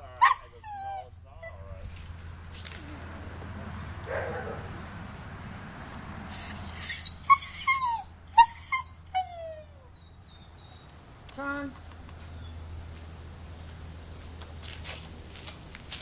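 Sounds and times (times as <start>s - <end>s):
dog whining and yelping: 0.0s - 1.8s, 4.0s - 10.9s, 12.3s - 13.2s.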